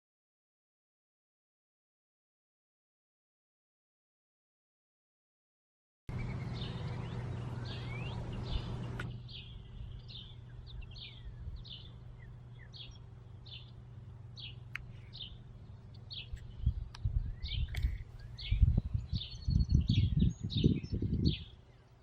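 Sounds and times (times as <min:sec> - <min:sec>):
low background hum: 0:06.1 - 0:22.0
small songbird chirping: 0:06.1 - 0:22.0.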